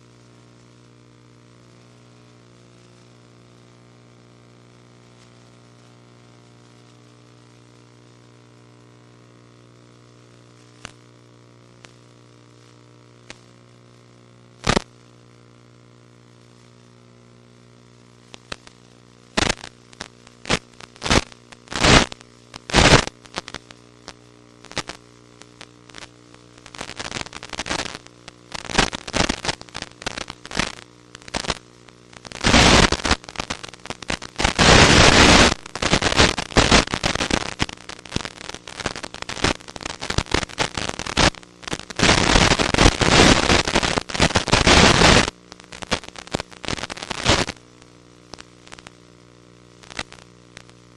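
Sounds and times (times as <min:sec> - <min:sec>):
loud static hiss: 0:00.0 - 0:50.9
radio static crackles and pops: 0:00.0 - 0:50.9
steady low hum: 0:00.0 - 0:50.9.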